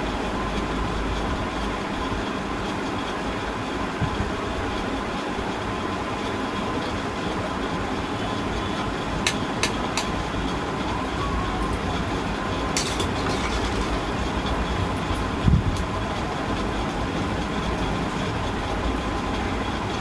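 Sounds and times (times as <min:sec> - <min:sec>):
steady rushing noise: 0:00.0 - 0:20.0
utensil clicking against pot: 0:09.2 - 0:10.2.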